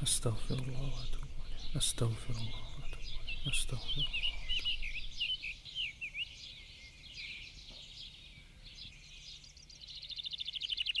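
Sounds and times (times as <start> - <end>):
faint low hum: 0.0 - 6.8
bird trill: 0.0 - 11.0
birds chirping and twittering: 0.0 - 11.0.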